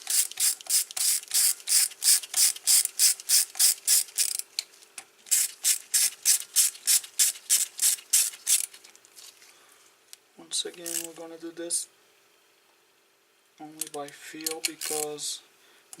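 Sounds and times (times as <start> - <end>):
socket ratchet clicking: 0.0 - 4.4.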